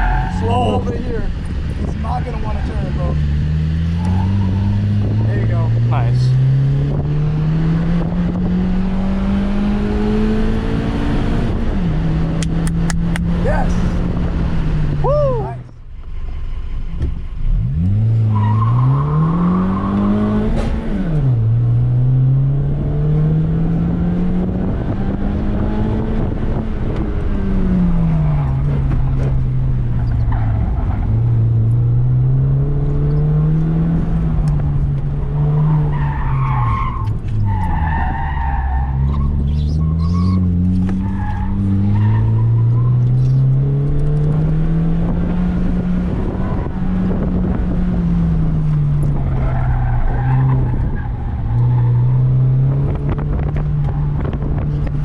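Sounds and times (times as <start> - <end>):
car engine revving: 0.0 - 55.0.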